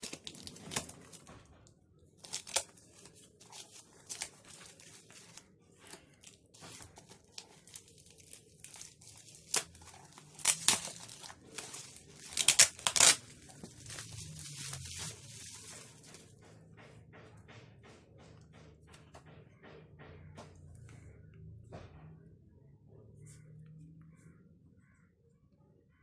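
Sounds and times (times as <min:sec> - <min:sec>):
packaging being torn and crinkled: 0:00.0 - 0:01.2, 0:02.2 - 0:16.2.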